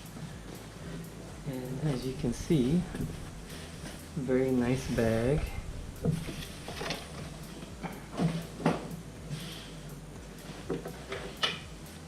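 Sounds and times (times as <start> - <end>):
backpack rustling and knocking: 2.0 - 4.0, 4.7 - 9.4.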